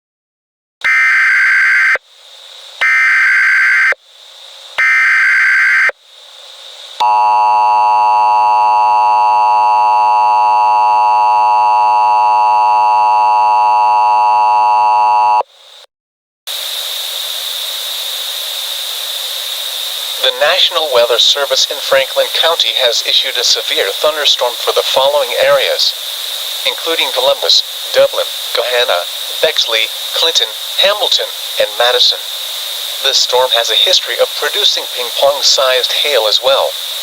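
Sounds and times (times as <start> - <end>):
buzzing data bursts: 0.8 - 2.0, 2.8 - 4.0, 4.8 - 5.9
two-tone attention signal: 0.8 - 2.0, 2.8 - 4.0, 7.0 - 15.4
static hiss: 0.8 - 10.7, 15.4 - 15.9, 16.5 - 37.0.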